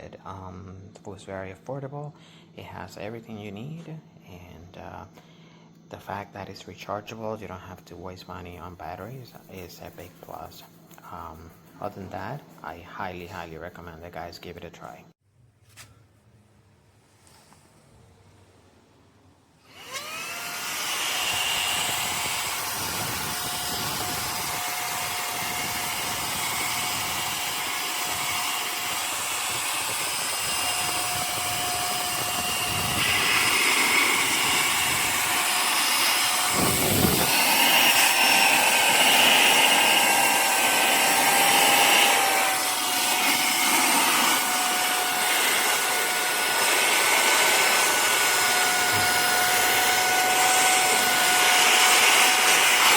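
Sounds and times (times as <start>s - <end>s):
handheld vacuum cleaner whine: 19.6s - 52.9s.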